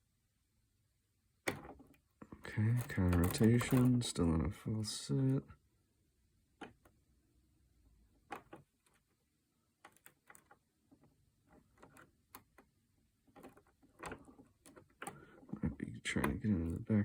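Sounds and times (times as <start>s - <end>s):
faint lock picking clicks: 9.8s - 12.7s, 13.3s - 15.5s.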